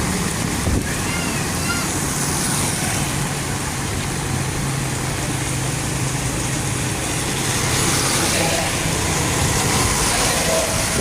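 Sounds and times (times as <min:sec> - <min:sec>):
rain hissing on wet road: 0:00.0 - 0:11.0
vehicle engines humming: 0:00.0 - 0:11.0.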